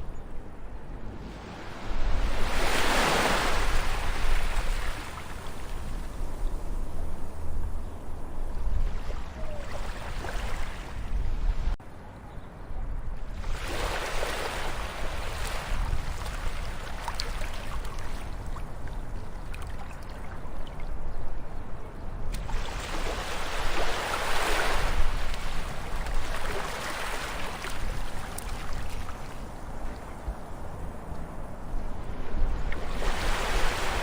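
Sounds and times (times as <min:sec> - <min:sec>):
ocean waves washing ashore: 0:00.0 - 0:11.8, 0:13.2 - 0:20.9, 0:22.3 - 0:34.0.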